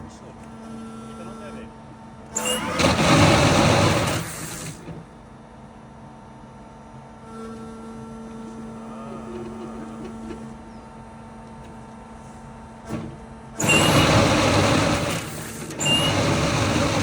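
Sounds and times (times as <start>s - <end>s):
loud machine grinding: 2.4s - 4.9s, 13.6s - 17.0s
machine running hum: 6.2s - 11.5s, 13.0s - 17.0s.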